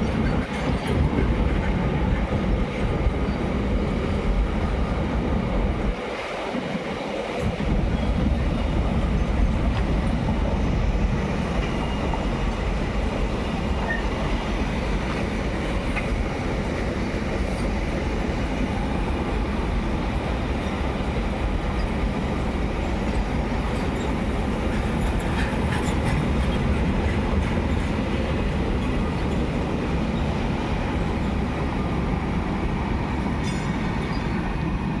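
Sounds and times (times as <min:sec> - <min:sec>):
freight train rumbling past: 0:00.0 - 0:35.0.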